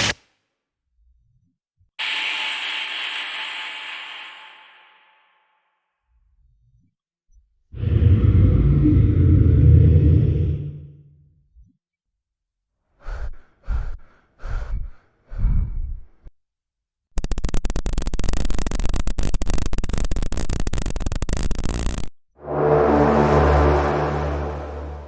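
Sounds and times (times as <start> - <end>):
breathy exhalations: 13.0 - 16.2.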